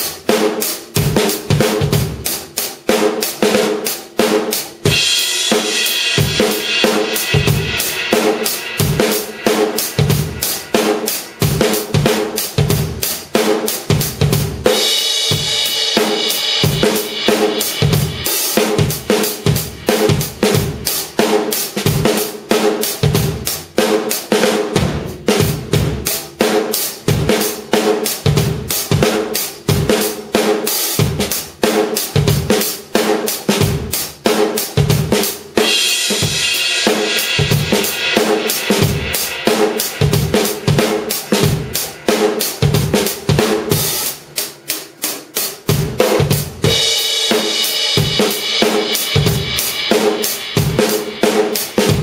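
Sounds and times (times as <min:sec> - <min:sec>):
drum kit groove: 0:00.0 - 0:52.0
cymbal crashes: 0:04.8 - 0:13.2, 0:14.7 - 0:20.9, 0:35.6 - 0:45.2, 0:45.9 - 0:52.0.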